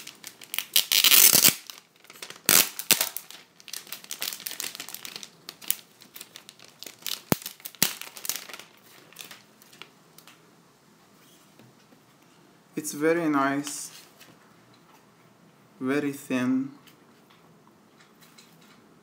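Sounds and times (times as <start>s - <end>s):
packaging crinkling and tearing: 0.0s - 10.3s
packaging rustling: 0.0s - 10.3s.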